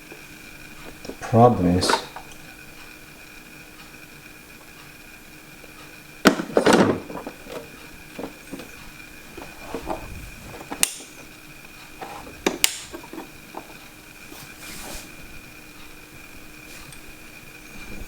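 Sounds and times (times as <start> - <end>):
faint high whine: 0.0 - 18.0
plastic parts knocking and clattering: 6.2 - 11.1, 12.0 - 13.8.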